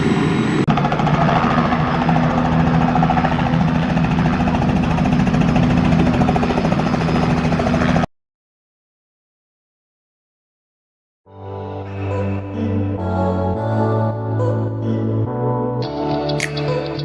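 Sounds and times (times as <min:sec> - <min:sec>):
helicopter engine and rotor pulsing: 0:00.0 - 0:08.1.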